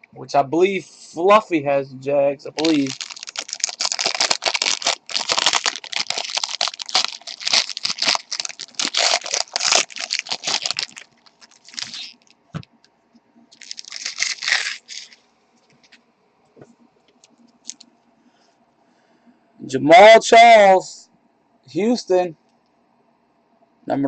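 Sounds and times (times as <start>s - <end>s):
wrappers crinkling and tearing: 2.5s - 12.4s, 13.5s - 15.2s, 17.6s - 17.8s.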